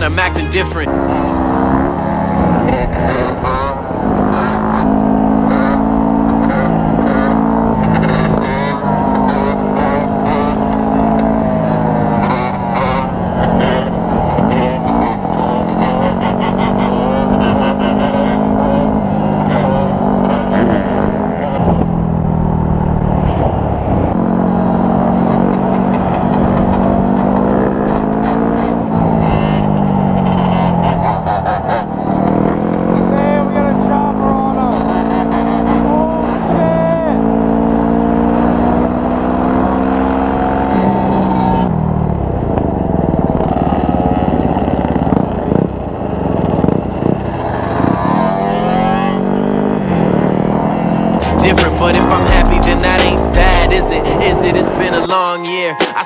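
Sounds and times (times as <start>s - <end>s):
dirt bike engines revving: 46.9s - 56.0s.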